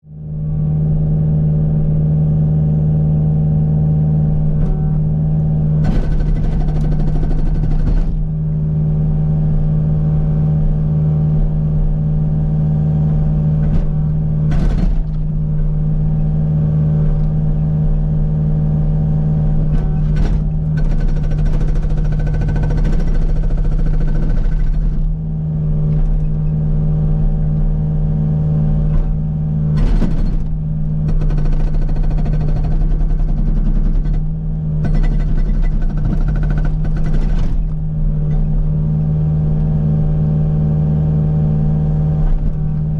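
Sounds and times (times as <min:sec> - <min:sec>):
diesel engine running: 0:00.0 - 0:42.9
hydraulic breaker hammering rock: 0:05.8 - 0:08.3, 0:13.6 - 0:15.4, 0:19.7 - 0:25.2, 0:29.7 - 0:37.8.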